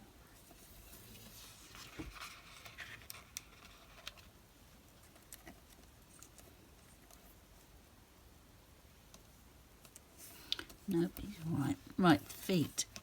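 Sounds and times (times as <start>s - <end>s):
paper and tools rustling and clicking: 0.4s - 4.4s.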